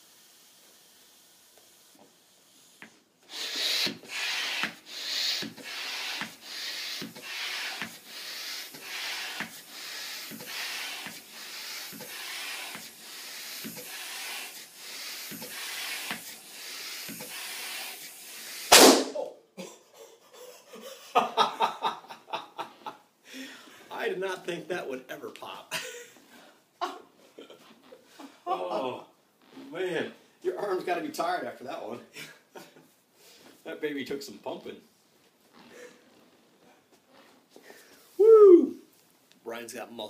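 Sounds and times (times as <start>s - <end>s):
hand air pump hissing strokes: 0.0s - 19.0s
balloon bursting: 3.3s - 19.3s.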